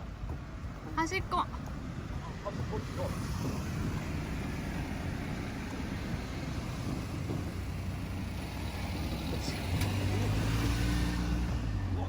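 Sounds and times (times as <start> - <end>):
low vehicle rumble: 0.0 - 12.0.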